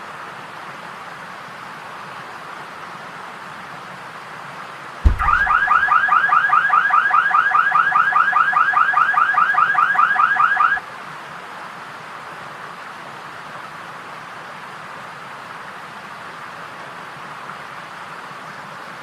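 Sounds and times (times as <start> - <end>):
thump: 5.0 - 5.9.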